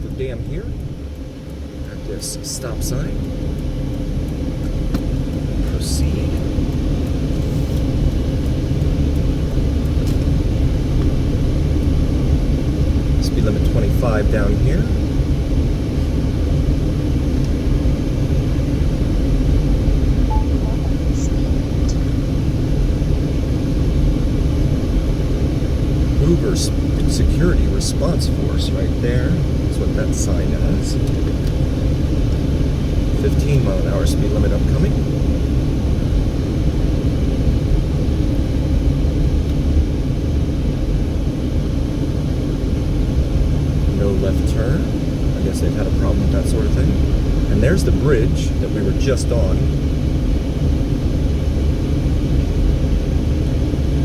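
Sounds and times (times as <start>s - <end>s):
car engine and road rumble: 0.0s - 54.0s.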